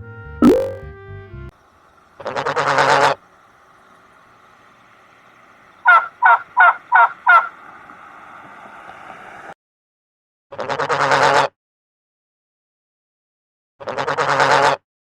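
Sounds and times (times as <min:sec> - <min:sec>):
faint steady background noise: 0:01.5 - 0:09.6
turkey gobbling: 0:01.9 - 0:09.5.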